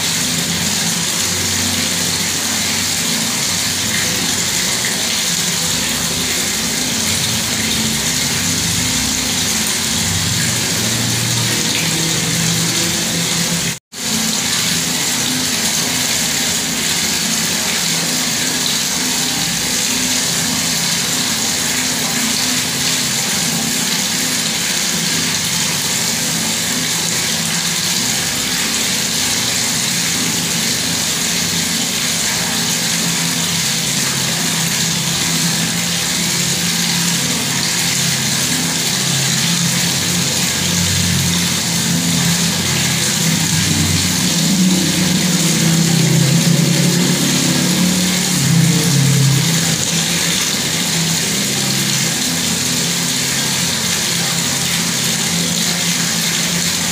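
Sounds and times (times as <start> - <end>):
water tap running: 0.0 - 56.9
low hum: 40.6 - 51.8.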